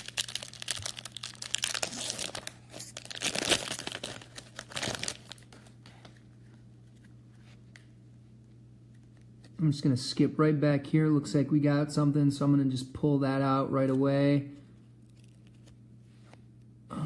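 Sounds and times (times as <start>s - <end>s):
plastic wrapper crinkling and tearing: 0.0s - 5.7s.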